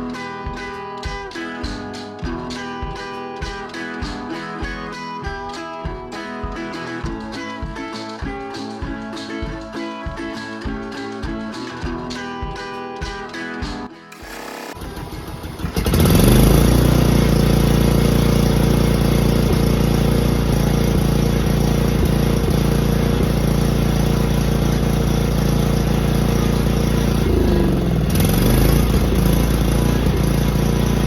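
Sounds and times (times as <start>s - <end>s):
mower engine cranking and running: 13.0s - 31.0s.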